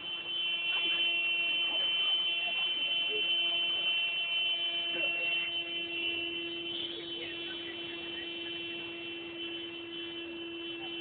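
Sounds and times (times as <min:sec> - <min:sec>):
vehicle horn honking steadily: 0:00.0 - 0:11.0.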